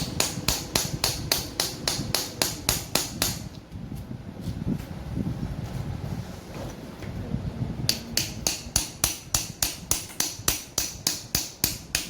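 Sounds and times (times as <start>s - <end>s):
hammer striking metal: 0.0s - 3.5s, 7.9s - 12.0s.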